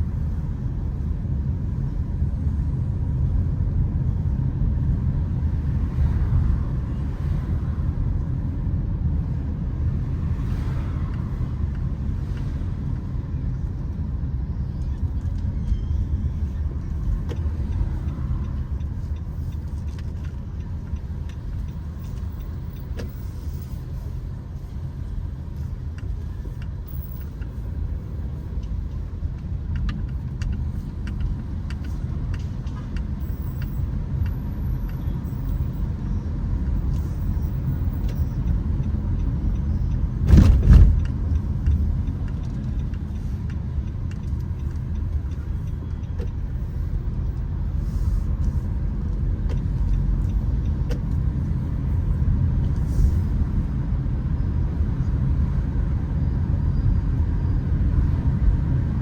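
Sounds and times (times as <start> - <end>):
car engine and road noise: 0.0 - 59.0
loud thump: 40.2 - 41.0.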